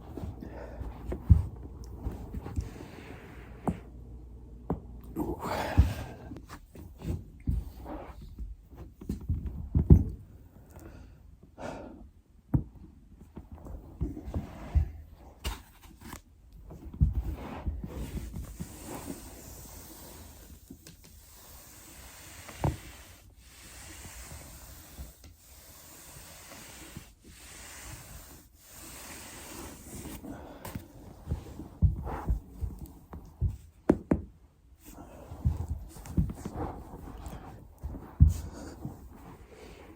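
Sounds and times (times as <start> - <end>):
body rolling on foam roller: 0.0 - 10.7, 12.5 - 39.9
person breathing: 0.2 - 1.6, 2.5 - 3.9, 5.2 - 6.4.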